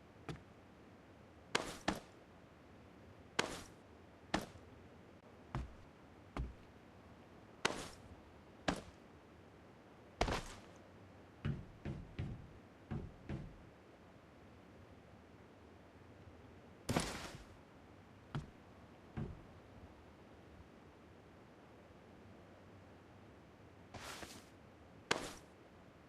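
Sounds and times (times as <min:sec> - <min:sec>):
sharp knocks and taps: 0:05.6 - 0:05.8, 0:06.4 - 0:06.7, 0:11.4 - 0:13.6.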